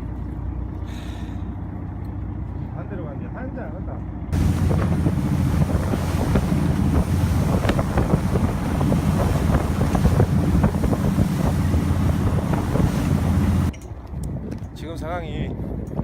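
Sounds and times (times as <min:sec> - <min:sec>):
boat engine humming: 0:00.0 - 0:13.8
wind buffeting microphone: 0:04.3 - 0:16.0
water splashing against hull: 0:04.4 - 0:13.8.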